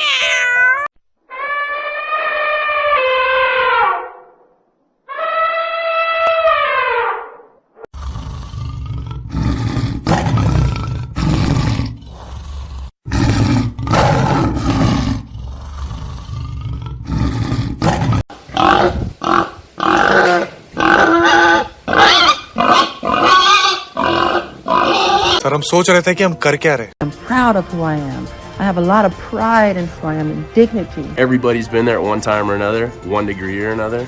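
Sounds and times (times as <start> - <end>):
large animal roaring: 7.9 - 23.3.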